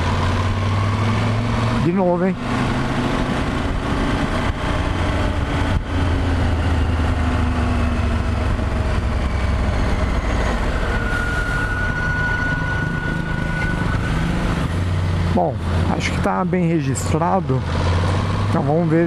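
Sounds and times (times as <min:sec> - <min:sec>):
high-pitched clutch squeal: 0:06.1 - 0:17.5.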